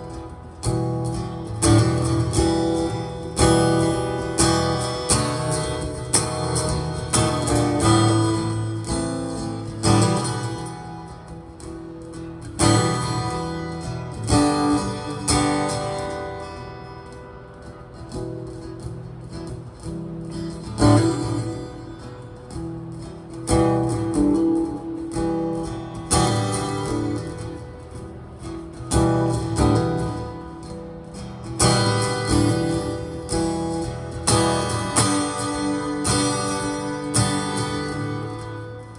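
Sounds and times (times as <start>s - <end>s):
acoustic guitar strumming: 0.0s - 38.9s.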